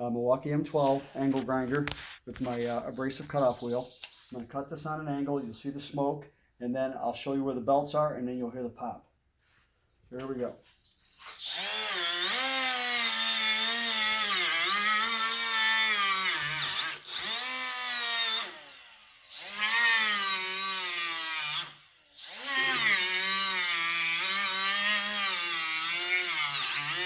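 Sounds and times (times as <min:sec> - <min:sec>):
angle grinder cutting rubber: 0:11.0 - 0:27.0.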